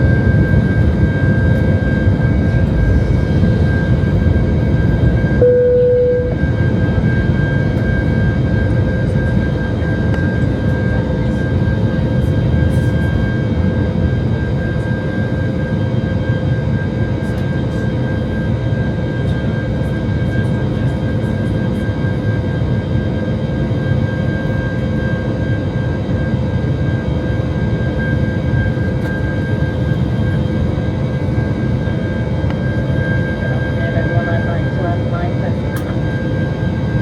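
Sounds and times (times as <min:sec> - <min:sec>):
high engine whine: 0:00.0 - 0:37.0
jet engine roar in cabin: 0:00.0 - 0:37.0
steady tone: 0:05.4 - 0:06.7.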